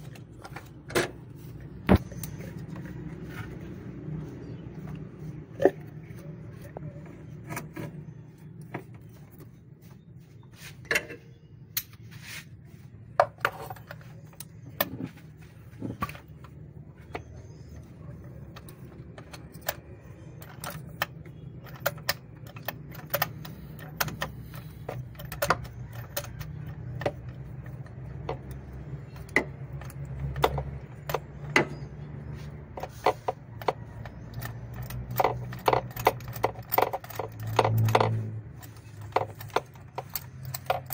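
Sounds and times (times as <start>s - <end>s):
metal tools clinking: 32.8s - 40.9s.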